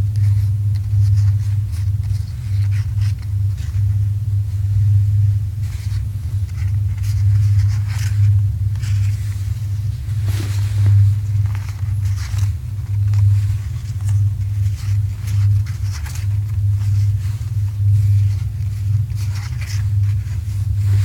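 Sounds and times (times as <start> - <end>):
steady low rumble: 0.0 - 21.0
cards and packaging rustling: 5.8 - 21.0.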